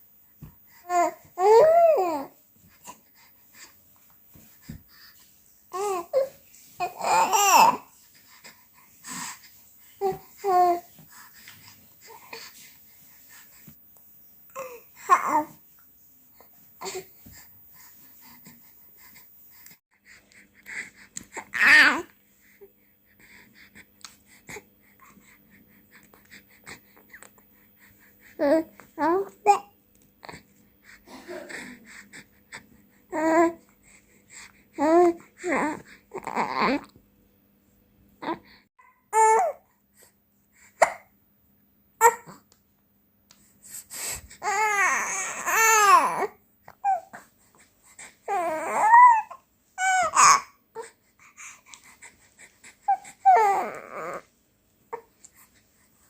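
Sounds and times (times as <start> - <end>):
baby cooing: 0.9 - 2.3, 5.7 - 7.9, 14.5 - 15.6, 21.4 - 22.1, 34.8 - 36.9, 48.3 - 50.9, 52.8 - 54.3.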